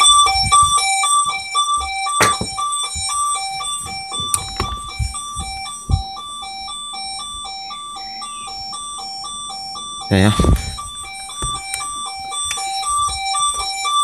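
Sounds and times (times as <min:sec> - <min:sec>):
alarm two-tone warble: 0:00.0 - 0:14.0
handling knocks: 0:00.2 - 0:06.2, 0:10.4 - 0:11.8.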